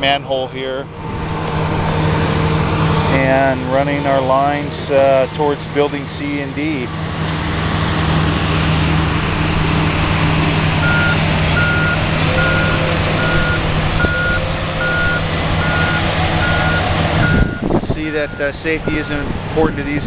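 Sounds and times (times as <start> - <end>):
diesel engine drone: 0.0 - 20.0
backup alarm beeping: 10.8 - 17.7.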